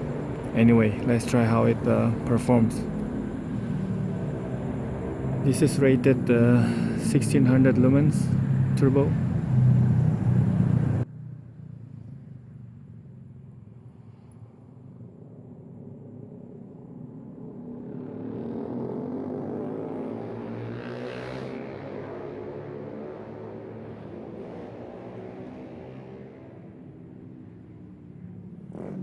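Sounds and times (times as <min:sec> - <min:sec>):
vehicle engine and tyres passing: 0:00.0 - 0:13.3
low traffic hum: 0:00.0 - 0:19.8.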